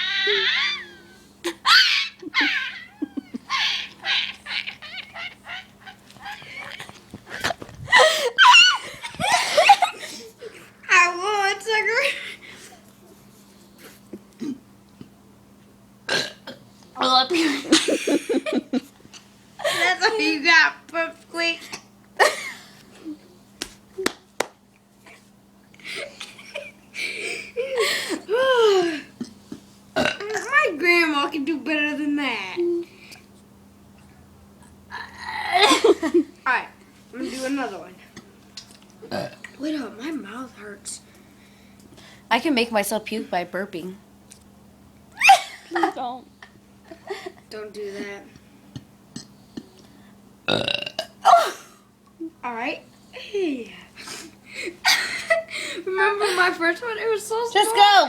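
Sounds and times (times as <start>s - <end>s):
child squealing: 0.0s - 6.5s, 7.9s - 8.9s
girl laughing: 0.0s - 10.6s, 17.3s - 18.9s, 22.2s - 22.7s, 25.8s - 29.1s, 34.9s - 36.4s, 45.2s - 46.2s, 54.0s - 56.5s.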